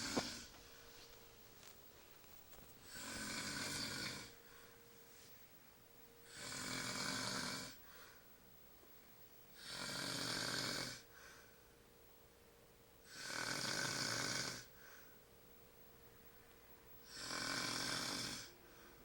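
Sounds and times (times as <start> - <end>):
man snoring: 0.0 - 0.6, 2.8 - 4.4, 6.3 - 7.8, 9.6 - 11.1, 13.0 - 14.7, 17.0 - 18.6
quiet breathing: 0.0 - 11.9, 13.0 - 19.0.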